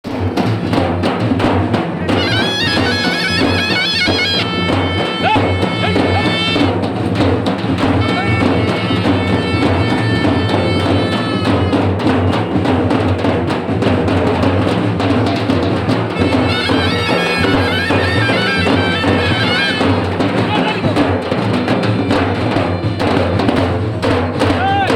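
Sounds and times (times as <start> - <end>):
steady drumming: 0.0 - 24.9
shrill wind instrument melody: 2.1 - 7.2, 7.8 - 12.8, 16.1 - 21.0.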